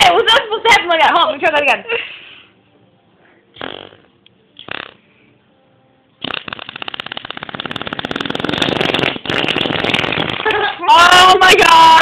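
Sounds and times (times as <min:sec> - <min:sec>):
person making fart noises: 0:03.6 - 0:05.0, 0:06.2 - 0:10.8.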